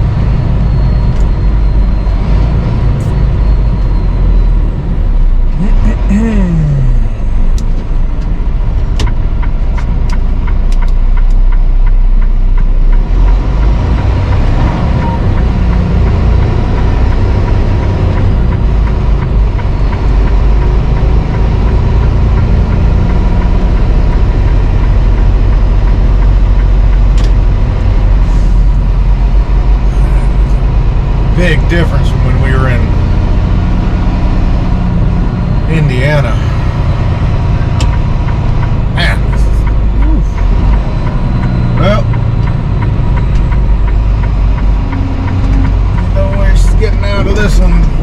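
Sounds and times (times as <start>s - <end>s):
diesel truck engine: 0.0s - 48.0s
road noise: 0.0s - 48.0s
light ticks: 8.9s - 13.8s.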